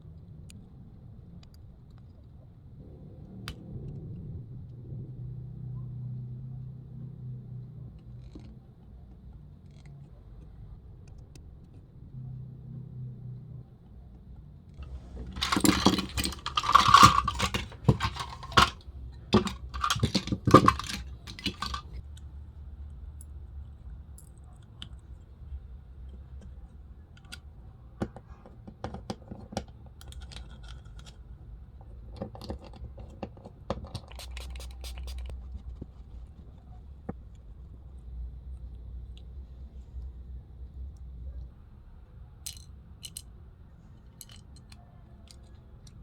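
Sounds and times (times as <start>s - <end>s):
small metal parts clattering: 14.8s - 22.0s.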